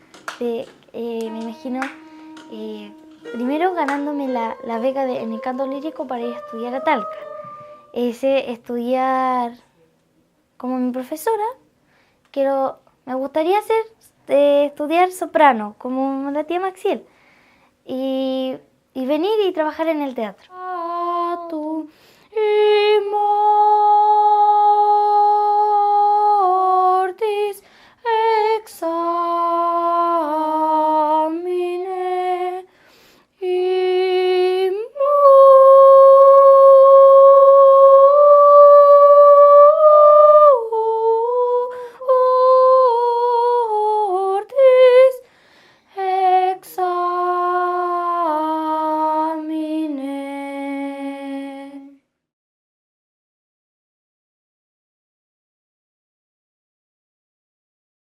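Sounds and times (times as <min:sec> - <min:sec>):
young female voice singing: 0:00.3 - 0:09.6, 0:17.9 - 0:32.7, 0:33.4 - 0:45.2, 0:45.9 - 0:52.0.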